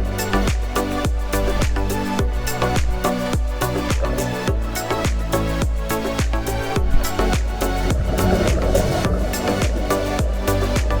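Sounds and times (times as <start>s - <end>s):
kick drum: 0.0s - 11.0s
electronic dance music: 7.4s - 11.0s.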